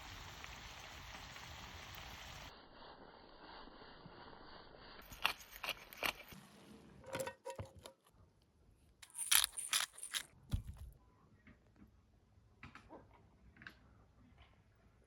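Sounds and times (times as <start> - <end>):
bright scraping and rustling: 5.0 - 8.1, 9.0 - 11.0
hard objects clicking and clinking: 9.0 - 10.9
dull thump: 10.5 - 11.0.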